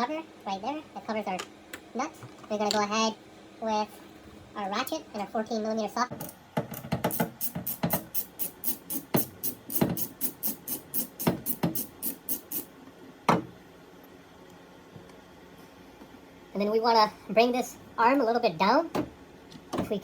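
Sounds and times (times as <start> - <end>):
ratchet clicking: 7.1 - 12.7.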